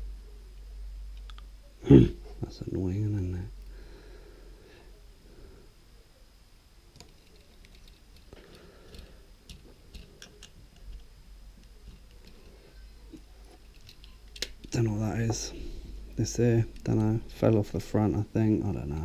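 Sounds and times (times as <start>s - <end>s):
small parts clicking and tapping: 6.9s - 15.4s.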